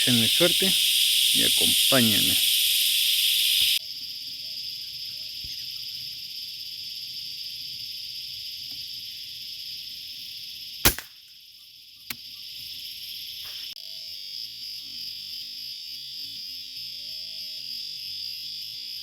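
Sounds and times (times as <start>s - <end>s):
cicadas droning: 0.0s - 19.0s
rifle shot: 10.9s - 11.1s.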